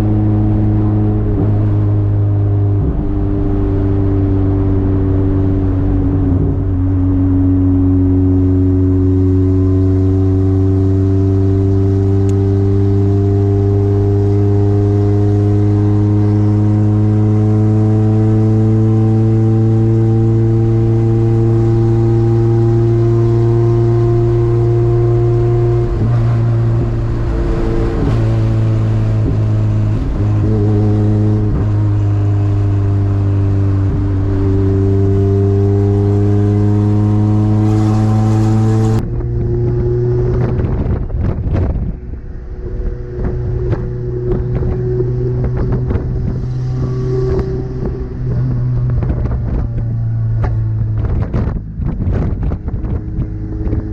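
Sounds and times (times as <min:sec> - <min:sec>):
low drone: 0:00.0 - 0:53.9
car engine running: 0:20.2 - 0:53.9.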